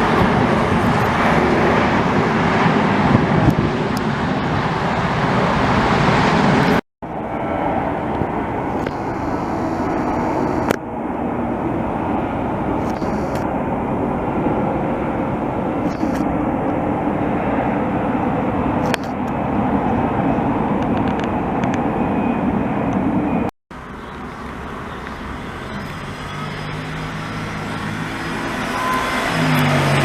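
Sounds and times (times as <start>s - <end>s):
jet engines roaring: 0.0s - 30.0s
road traffic: 0.0s - 30.0s
single click: 12.8s - 13.4s, 15.9s - 16.3s, 18.8s - 19.2s.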